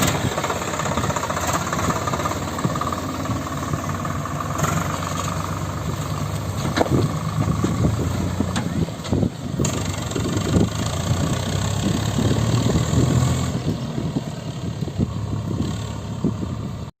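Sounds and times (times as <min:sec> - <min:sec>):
heavy diesel engine running: 0:00.0 - 0:16.9.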